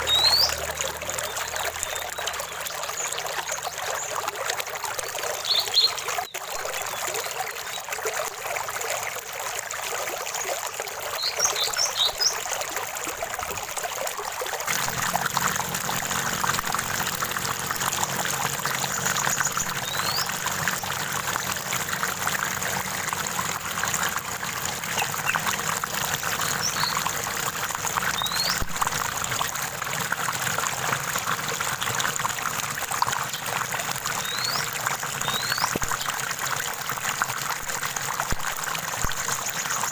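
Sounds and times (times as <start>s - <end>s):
bird chirps: 0.0s - 0.6s, 19.1s - 20.3s, 26.4s - 27.0s, 28.2s - 28.6s, 34.2s - 35.8s
stream water trickling: 0.0s - 39.9s.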